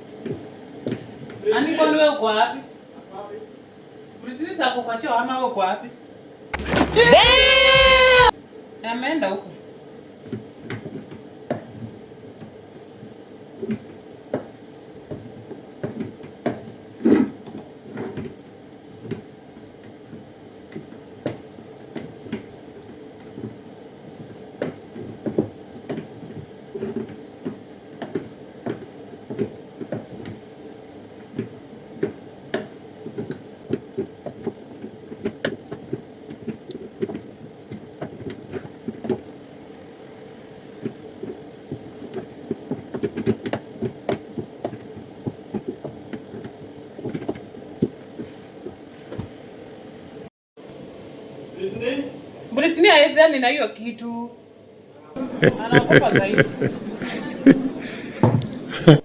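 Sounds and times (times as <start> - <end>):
steady low hum: 54.3 - 59.0.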